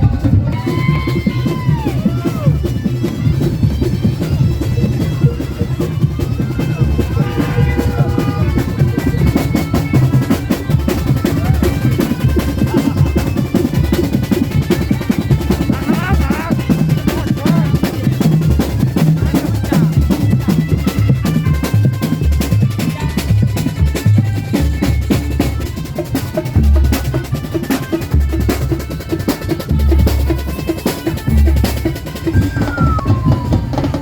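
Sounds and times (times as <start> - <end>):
bass drum beats: 0.0 - 25.6.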